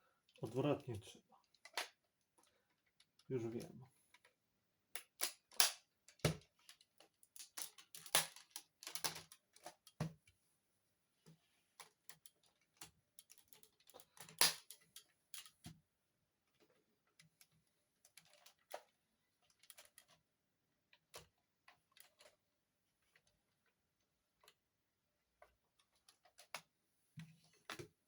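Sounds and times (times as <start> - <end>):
plastic toy parts clicking: 1.5 - 2.0, 4.9 - 10.0, 11.8 - 15.6.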